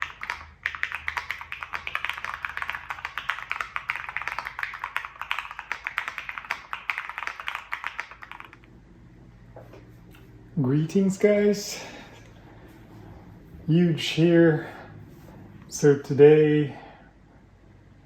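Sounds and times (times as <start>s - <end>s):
fast typing on mechanical keyboard: 0.0s - 8.7s.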